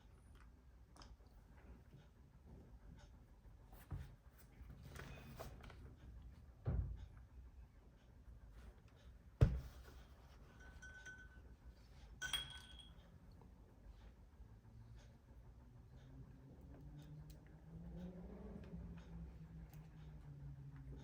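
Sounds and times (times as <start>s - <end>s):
dull knock of hard parts: 9.4s - 9.8s.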